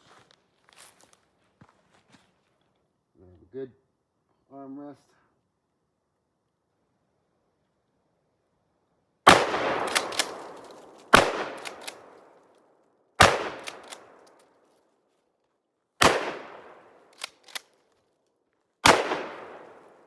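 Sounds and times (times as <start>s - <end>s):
shotgun shots with echo: 9.3s - 12.3s, 13.2s - 14.2s, 16.0s - 17.0s, 18.8s - 20.0s
short cracks: 9.3s - 12.6s, 13.2s - 14.6s, 16.0s - 18.2s.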